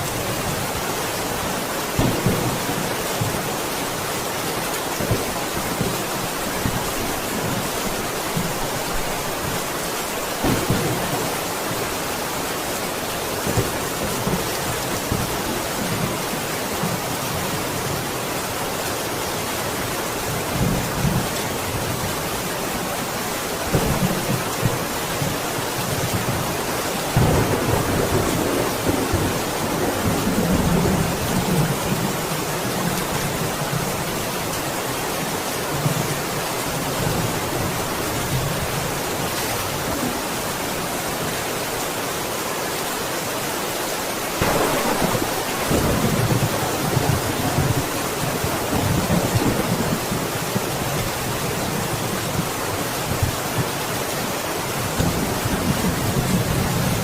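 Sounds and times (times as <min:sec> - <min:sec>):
steady rain: 0:00.0 - 0:57.0
rolling thunder: 0:44.4 - 0:50.3.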